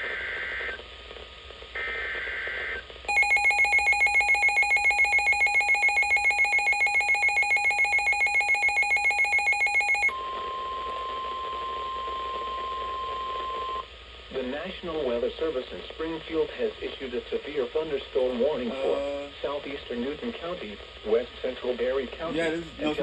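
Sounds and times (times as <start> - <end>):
rapid pulsing alert beeps: 3.1 - 10.1
steady warning alarm tone: 3.1 - 10.7.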